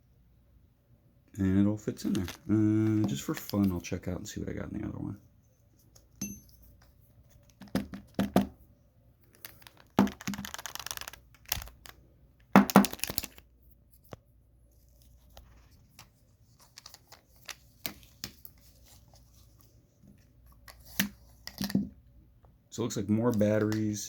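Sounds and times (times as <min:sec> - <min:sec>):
crinkling rustle: 0:01.9 - 0:04.0, 0:09.2 - 0:12.0, 0:12.8 - 0:21.6
clicks and knocks of plastic tube: 0:09.7 - 0:13.2.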